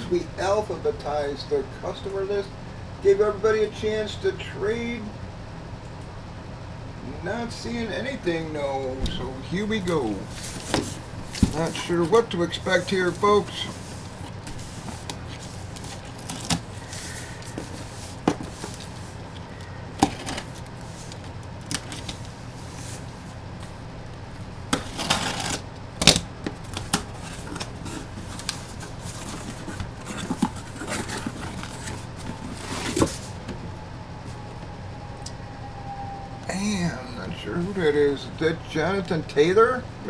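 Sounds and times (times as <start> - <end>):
faint low hum: 0.0 - 40.0
packaging rustling: 8.8 - 34.8
hands handling packaging: 9.0 - 34.8.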